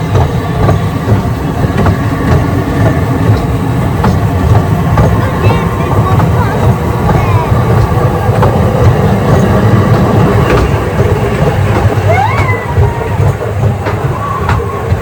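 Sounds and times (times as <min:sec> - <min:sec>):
small train rumbling: 0:00.0 - 0:15.0
train squeal: 0:05.2 - 0:15.0.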